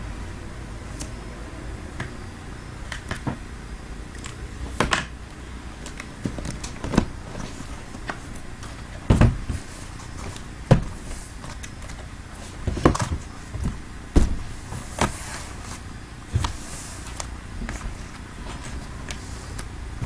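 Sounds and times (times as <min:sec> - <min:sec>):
cardboard scraping and rustling: 0:05.9 - 0:19.8
cardboard boxes knocking: 0:09.1 - 0:09.7, 0:10.6 - 0:11.0, 0:12.6 - 0:15.2.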